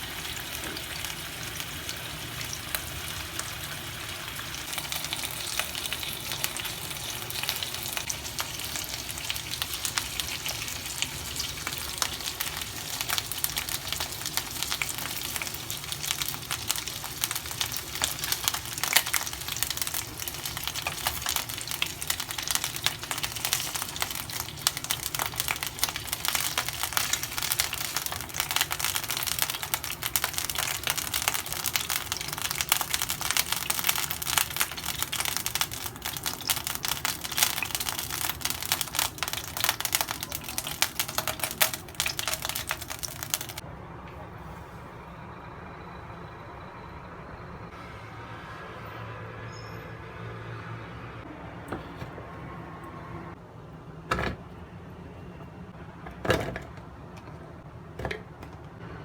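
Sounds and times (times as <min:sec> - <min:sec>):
food sizzling in hot oil: 0:00.0 - 0:43.6.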